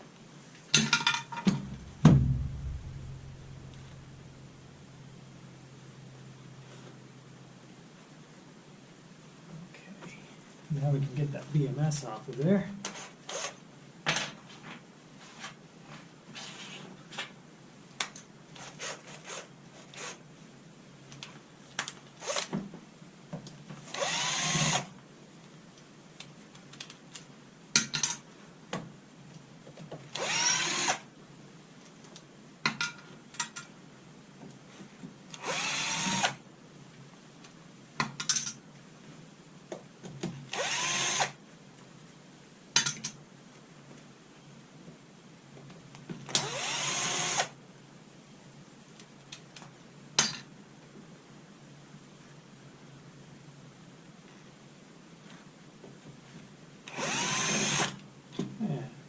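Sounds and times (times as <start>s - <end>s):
power drill motor winding: 12.9s - 13.6s, 22.2s - 22.5s, 23.9s - 24.9s, 30.2s - 31.0s, 35.4s - 36.4s, 40.5s - 41.4s, 46.3s - 47.5s, 56.9s - 58.0s.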